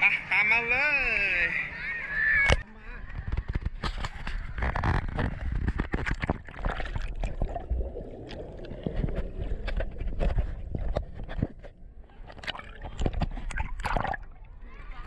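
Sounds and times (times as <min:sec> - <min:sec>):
sea water sloshing and splashing: 0:05.0 - 0:15.0.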